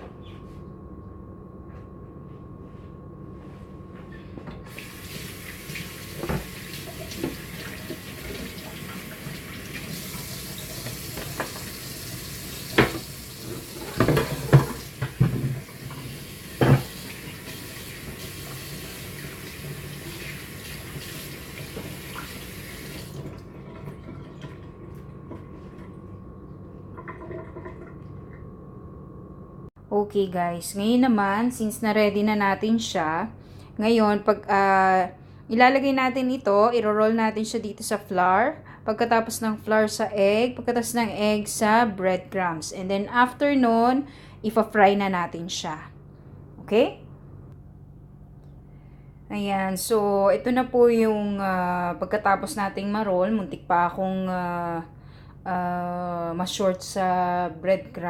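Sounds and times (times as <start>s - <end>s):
kitchen tap running: 4.7s - 28.5s.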